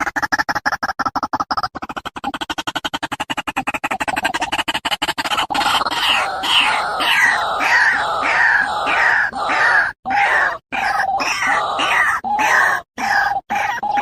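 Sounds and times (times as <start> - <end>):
birds giving harsh cries: 5.2 - 14.0.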